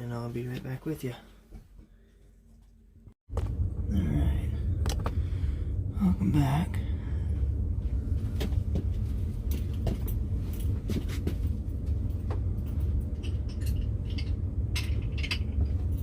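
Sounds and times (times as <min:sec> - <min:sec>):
steady low rumble: 0:00.0 - 0:16.0
hand tools clicking and clinking: 0:12.7 - 0:16.0.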